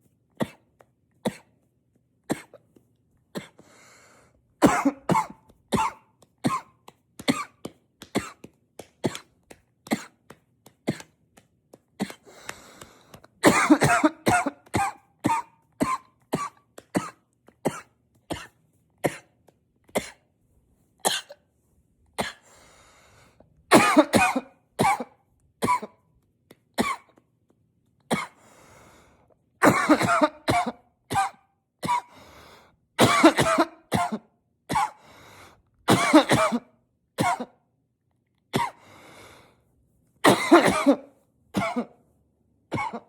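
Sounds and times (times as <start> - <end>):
man coughing: 4.6 - 6.7, 13.4 - 18.5, 23.7 - 25.9, 29.6 - 32.1, 33.0 - 35.0, 35.9 - 37.5, 40.2 - 42.0, 42.7 - 43.0.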